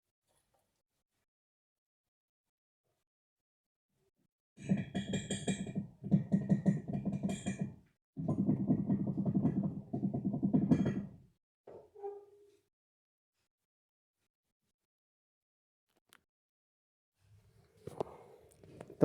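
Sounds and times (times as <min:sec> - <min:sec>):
suspension knocking and rattling: 0:04.6 - 0:11.2.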